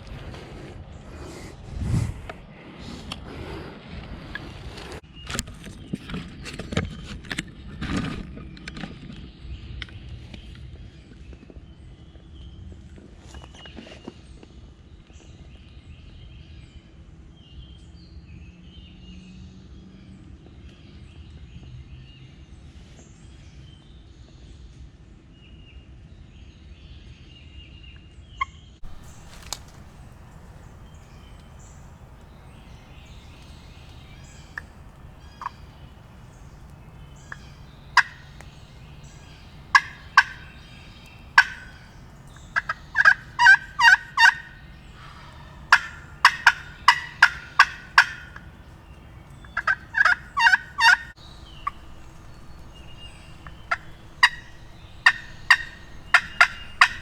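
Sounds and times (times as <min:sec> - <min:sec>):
turkey yelping: 0:28.8 - 0:57.0.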